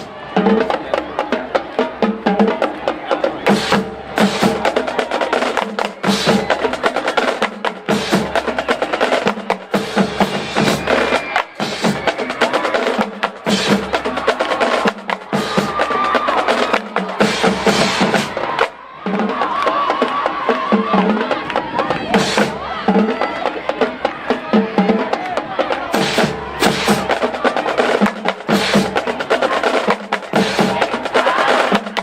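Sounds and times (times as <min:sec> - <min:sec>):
rapid snare drum strokes: 0:00.0 - 0:32.0.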